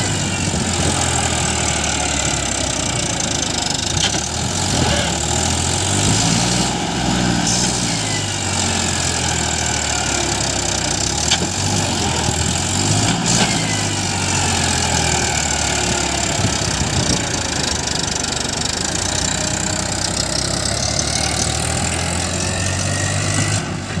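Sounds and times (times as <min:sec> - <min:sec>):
diesel engine running: 0:00.0 - 0:24.0.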